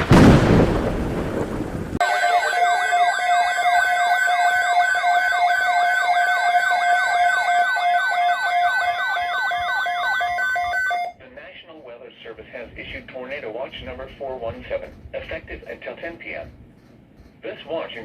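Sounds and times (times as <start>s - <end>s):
electronic siren wailing: 2.0s - 11.2s.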